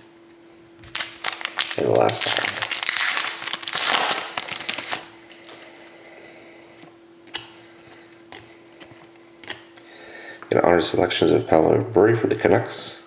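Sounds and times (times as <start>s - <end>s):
wrapper crinkling as torn open: 0.8s - 5.6s.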